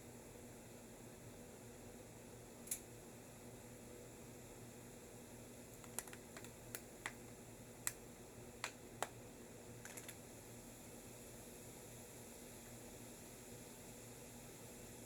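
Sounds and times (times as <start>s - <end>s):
faint hiss: 0.0s - 15.0s.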